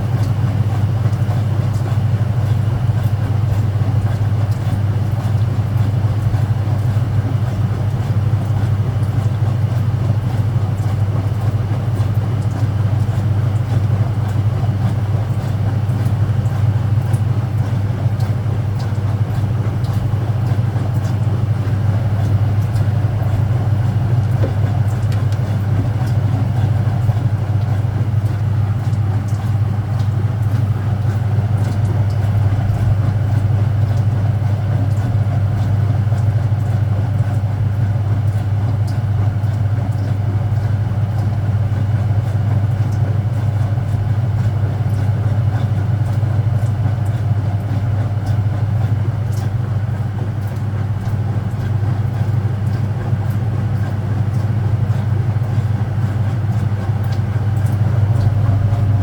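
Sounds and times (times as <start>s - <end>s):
washing machine spinning: 0.0s - 59.0s.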